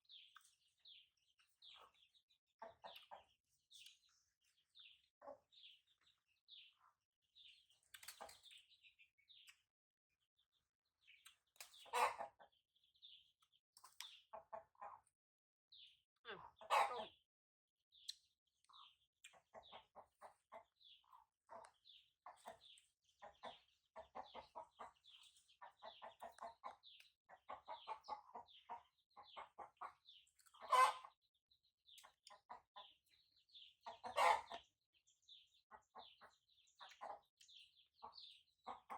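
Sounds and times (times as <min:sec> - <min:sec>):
chickens clucking: 0:00.1 - 0:09.6, 0:11.1 - 0:13.2, 0:13.8 - 0:15.1, 0:15.8 - 0:17.2, 0:18.0 - 0:31.2, 0:31.9 - 0:38.9
chicks peeping: 0:00.1 - 0:09.6, 0:11.0 - 0:15.1, 0:15.8 - 0:17.2, 0:18.0 - 0:31.2, 0:31.9 - 0:38.9
harsh chicken calls: 0:30.6 - 0:31.1, 0:34.0 - 0:34.6.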